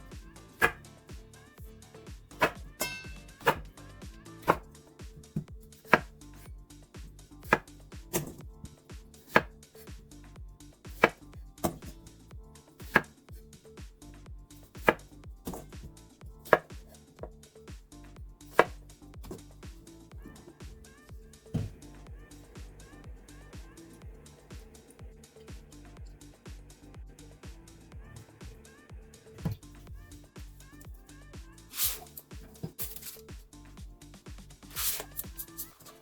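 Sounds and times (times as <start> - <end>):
knife cutting on cutting board: 0.6 - 0.8, 2.4 - 3.7, 4.4 - 4.6, 5.4 - 6.2, 7.4 - 8.4, 9.2 - 9.5, 10.9 - 11.9, 12.8 - 13.1, 14.8 - 15.8, 16.4 - 16.7, 18.5 - 19.4, 31.7 - 33.3, 34.6 - 36.0.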